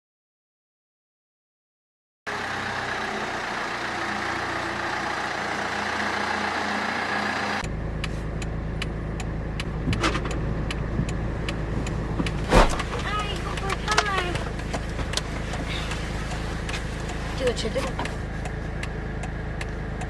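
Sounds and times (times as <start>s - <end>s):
car engine hum: 2.3s - 20.0s
road noise: 2.3s - 20.0s
sharp ticks: 7.6s - 12.4s, 13.0s - 20.0s.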